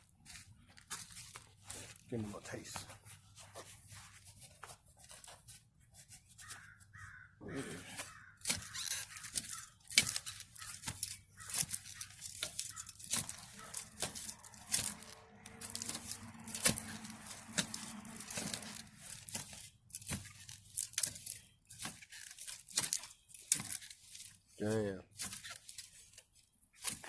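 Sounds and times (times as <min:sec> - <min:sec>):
digging tool scraping dirt: 0:00.1 - 0:27.0.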